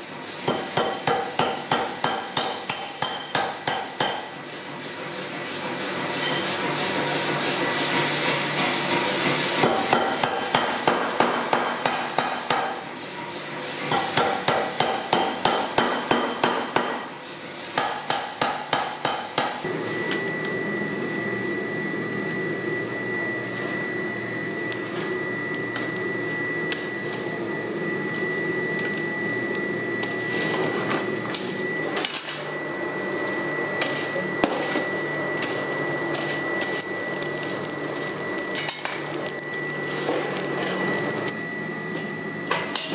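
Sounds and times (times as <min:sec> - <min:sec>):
hammer striking steel on anvil: 0:00.4 - 0:04.4, 0:09.6 - 0:12.8, 0:13.9 - 0:19.7
steady hum with high whine: 0:20.0 - 0:42.9.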